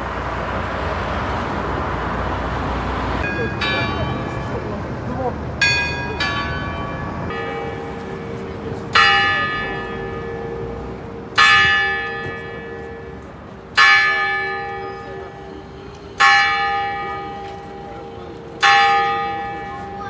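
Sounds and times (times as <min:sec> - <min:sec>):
church bell tolling: 0:03.2 - 0:20.0.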